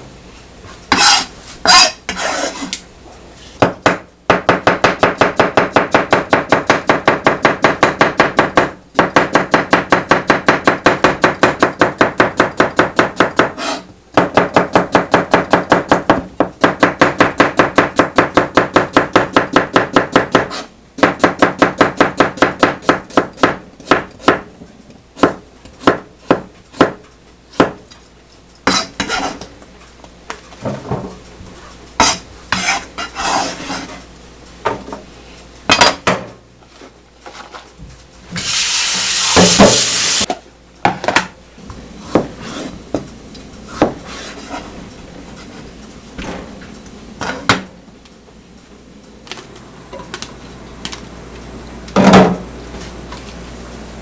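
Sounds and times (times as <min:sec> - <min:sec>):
knife chopping on cutting board: 0:00.9 - 0:02.7, 0:03.6 - 0:24.5, 0:25.2 - 0:27.8, 0:28.7 - 0:29.4, 0:32.0 - 0:33.9.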